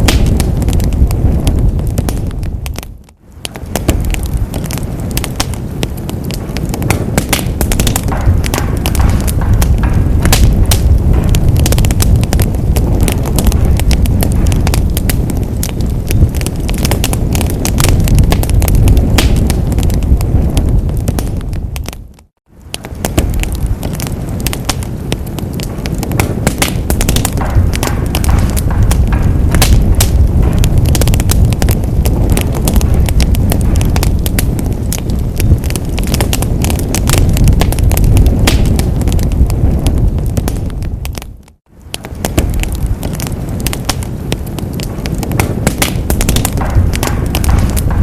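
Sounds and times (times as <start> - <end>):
fireplace fire crackling: 0.0 - 48.0
low rumble of flames: 0.0 - 48.0.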